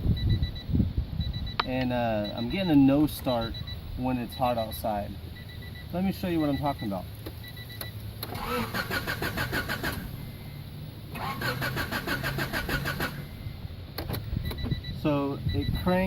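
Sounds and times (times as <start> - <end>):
car engine cranking: 6.5 - 10.5, 11.1 - 14.9.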